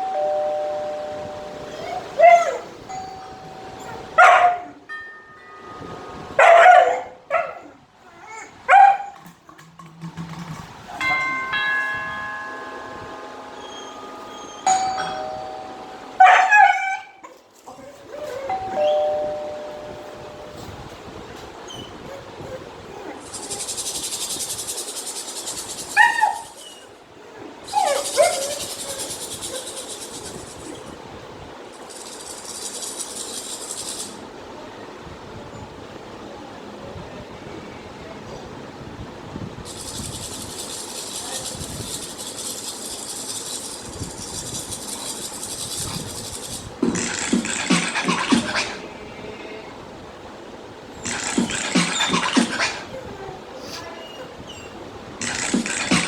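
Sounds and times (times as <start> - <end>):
ringing chime: 0.0 - 2.2, 2.8 - 4.2, 4.9 - 6.4, 11.0 - 16.4, 18.4 - 20.8
dog barking: 3.8 - 4.8, 6.4 - 7.8, 8.7 - 9.2, 16.2 - 17.4
fast-pulsing high hiss: 23.2 - 26.0, 27.9 - 31.1, 31.7 - 34.2, 39.7 - 48.7, 51.0 - 52.8, 55.2 - 56.0.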